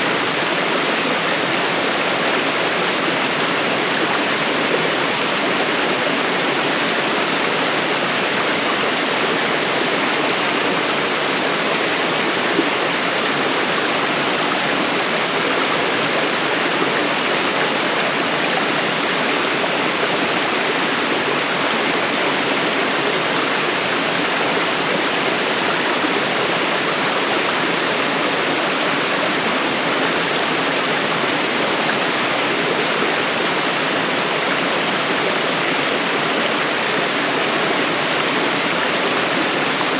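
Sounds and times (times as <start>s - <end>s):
waterfall rushing over rock: 0.0s - 39.9s.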